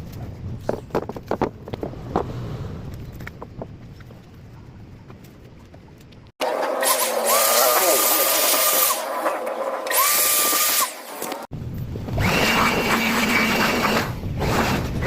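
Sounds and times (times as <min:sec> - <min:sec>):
small electric motor whirring: 0:06.4 - 0:11.5.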